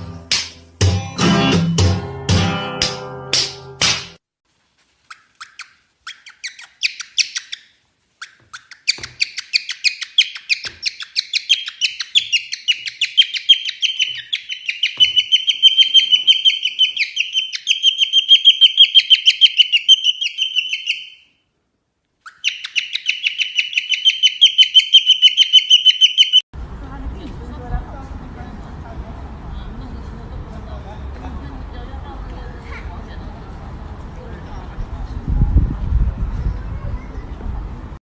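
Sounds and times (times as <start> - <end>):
bird chirping: 5.0 - 21.4, 22.2 - 26.4.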